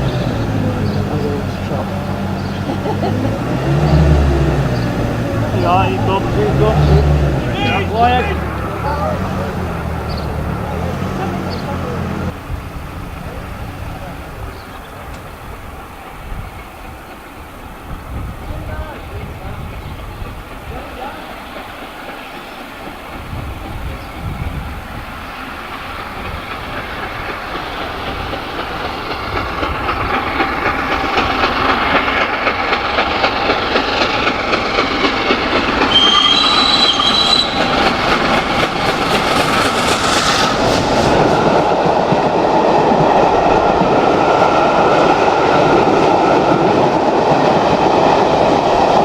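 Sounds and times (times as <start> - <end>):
high wheel squeal: 0.0 - 15.5, 33.4 - 41.5
steam train running past: 0.0 - 49.0
wheels clattering over rail joints: 0.0 - 49.0.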